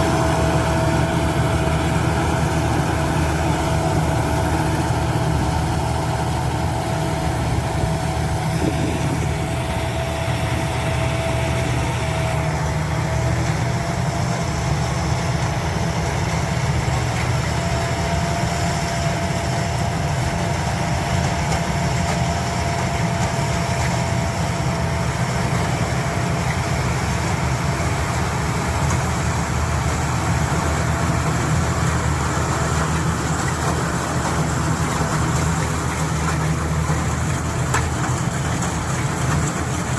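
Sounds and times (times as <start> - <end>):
steady high whine: 0.0 - 15.9
combine harvester engine drone: 0.0 - 39.9.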